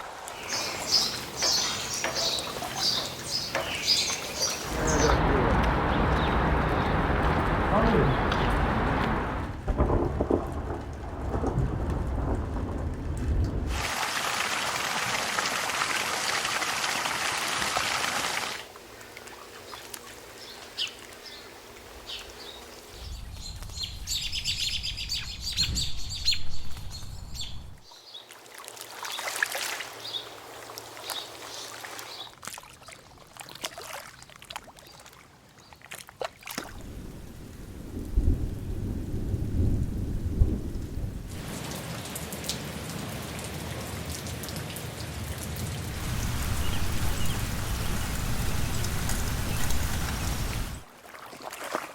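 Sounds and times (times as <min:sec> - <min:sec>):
heavy rain: 0:00.0 - 0:18.7, 0:36.7 - 0:50.9
birds chirping: 0:00.3 - 0:09.4, 0:19.3 - 0:28.3, 0:45.9 - 0:50.8
thunder rumbling: 0:04.6 - 0:13.9, 0:36.7 - 0:42.0, 0:45.7 - 0:50.9.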